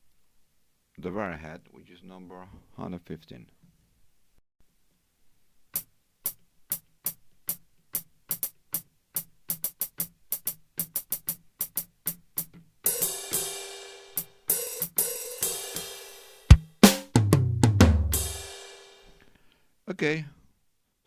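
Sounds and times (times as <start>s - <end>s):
drum machine hi-hat ticks: 5.7s - 18.5s.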